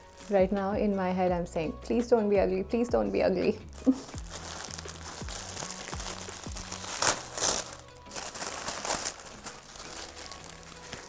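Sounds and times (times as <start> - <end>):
paper packaging crinkling: 0.0 - 0.5, 3.7 - 11.0
background music: 0.0 - 11.0.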